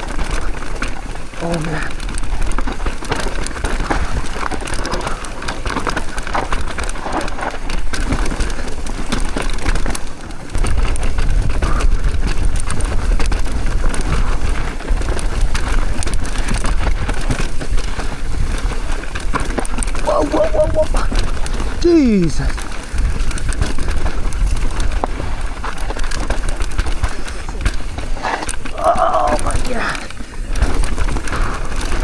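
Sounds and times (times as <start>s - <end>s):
bike clicks and rattles: 0.0s - 32.0s
bike tyres skidding over dirt: 0.0s - 32.0s
wind buffeting microphone: 10.5s - 32.0s.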